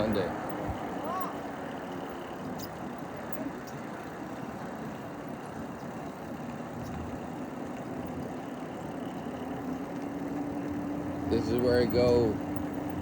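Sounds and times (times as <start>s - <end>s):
tyres humming on pavement: 0.0s - 13.0s.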